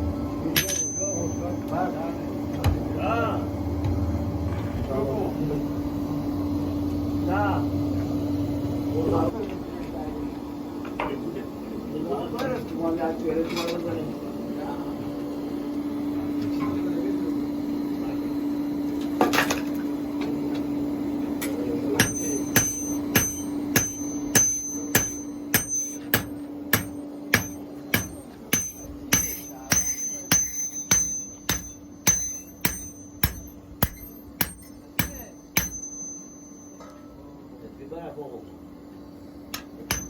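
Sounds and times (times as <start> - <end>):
hammer striking metal on anvil: 0.5 - 1.8, 21.4 - 37.1, 39.5 - 40.0
steady hum: 14.0 - 40.0.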